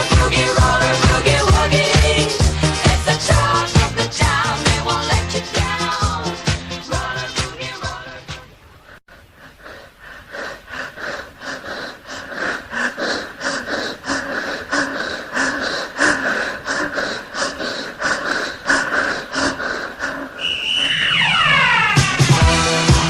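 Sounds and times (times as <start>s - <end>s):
rhythmic breathy puffs: 0.0s - 21.2s
high electronic tone sweeping down: 20.4s - 23.0s
steady synth tone: 20.4s - 23.0s.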